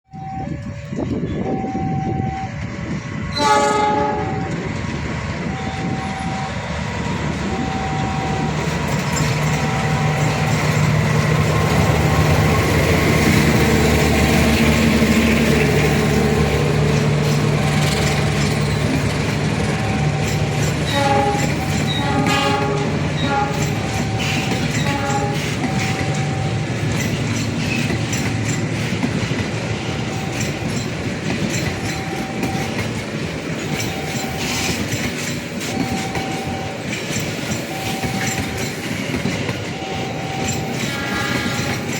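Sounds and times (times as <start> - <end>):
locomotive running: 0.1 - 41.9
train cars clattering on rails: 2.6 - 41.9
train horn: 3.3 - 4.7, 19.8 - 26.6, 39.8 - 41.9.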